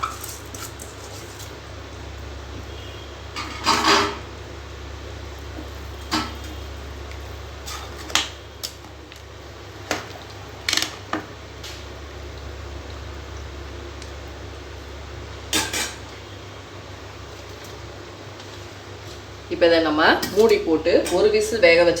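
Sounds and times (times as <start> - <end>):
metal utensil clinking on pot: 15.5 - 16.0.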